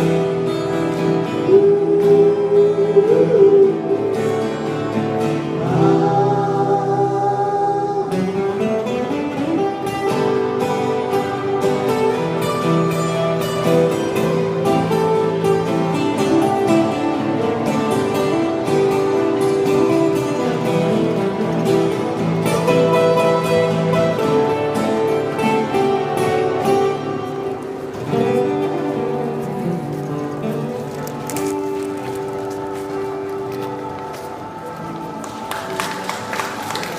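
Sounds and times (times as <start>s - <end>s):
pop song with guitar: 0.0s - 36.2s.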